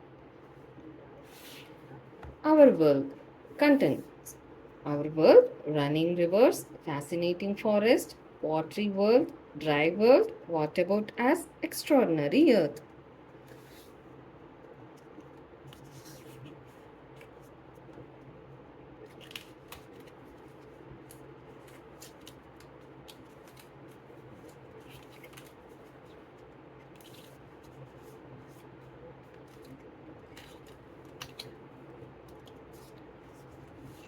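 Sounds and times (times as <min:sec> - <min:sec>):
steady low hum: 0:00.0 - 0:34.0
book pages turning: 0:13.3 - 0:18.3, 0:19.0 - 0:34.0
paper rustles and light taps: 0:19.0 - 0:34.0.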